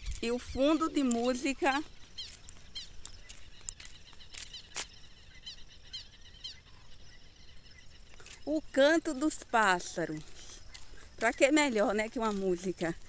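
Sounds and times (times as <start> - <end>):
birds chirping and whistling: 0.0 - 8.8.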